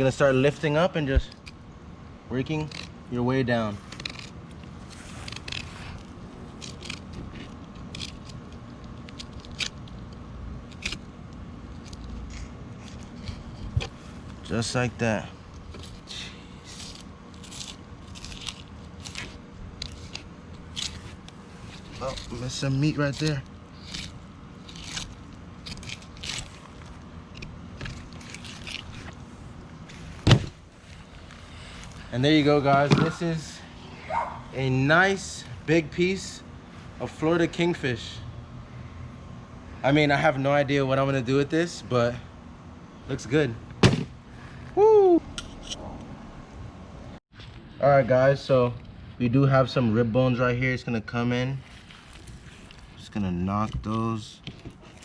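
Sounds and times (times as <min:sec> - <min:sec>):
steady low hum: 0:00.0 - 0:55.0
knife slicing and scraping fish: 0:03.8 - 0:11.1, 0:15.7 - 0:29.2.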